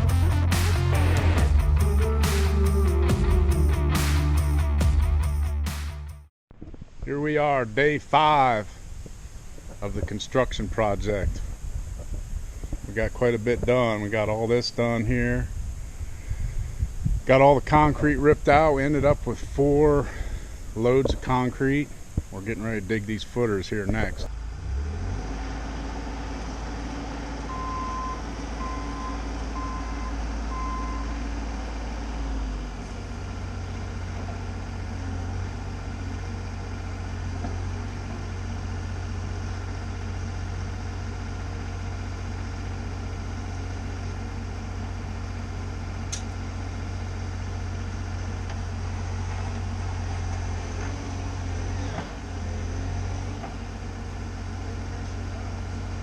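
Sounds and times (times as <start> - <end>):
diesel engine running: 0.0 - 6.1, 8.2 - 56.0
travel alarm beeps: 27.5 - 31.1.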